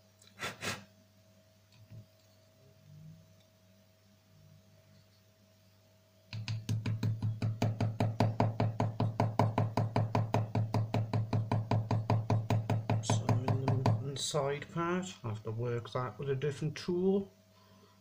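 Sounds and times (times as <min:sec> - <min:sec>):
small hammer tapping metal: 0:06.3 - 0:14.0.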